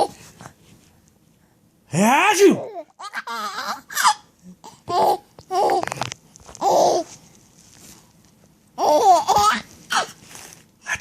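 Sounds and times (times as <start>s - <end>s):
baby vocal sound: 2.4s - 7.1s
baby laughing: 2.6s - 5.9s, 6.6s - 7.1s, 8.8s - 10.2s.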